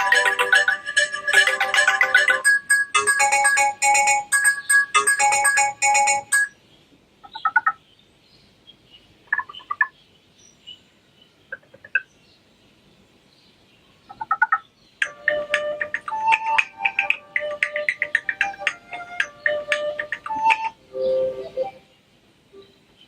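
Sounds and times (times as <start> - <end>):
electronic ringtone melody: 0.0 - 6.6, 15.0 - 21.8.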